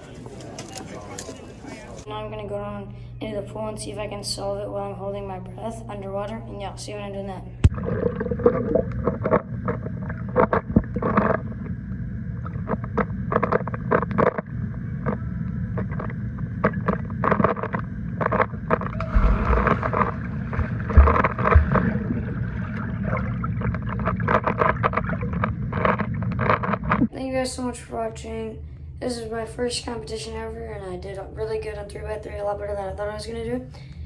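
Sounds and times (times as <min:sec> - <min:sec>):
low rumble: 0:02.0 - 0:33.2
muffled water sloshing and bubbling: 0:03.8 - 0:27.2.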